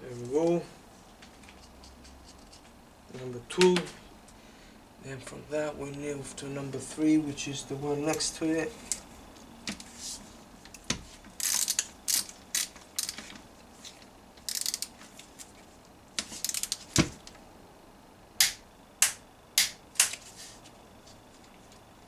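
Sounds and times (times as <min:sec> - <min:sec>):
ratchet wrench clicking: 0:11.4 - 0:13.2, 0:14.4 - 0:14.9, 0:16.4 - 0:16.9.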